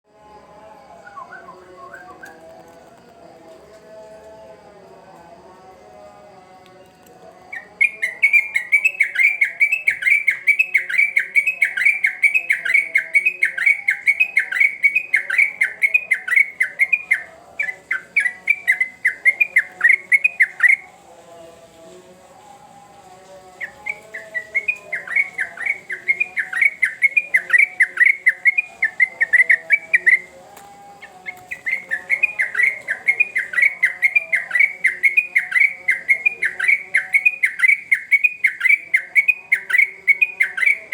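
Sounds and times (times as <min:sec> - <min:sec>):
bulbul chattering song: 0:06.9 - 0:21.0, 0:23.5 - 0:40.9.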